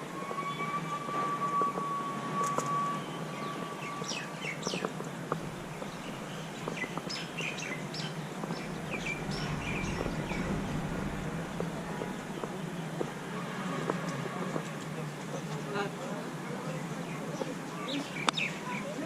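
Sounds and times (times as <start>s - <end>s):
steady background noise: 0.0s - 19.0s
small birds chirping: 3.9s - 10.4s
low hum: 5.3s - 13.9s
steady single tone: 8.4s - 13.4s.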